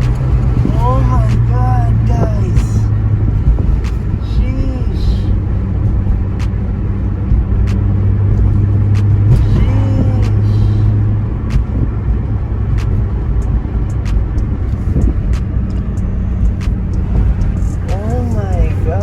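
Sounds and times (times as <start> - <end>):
car engine drone from cabin: 0.0 - 19.0.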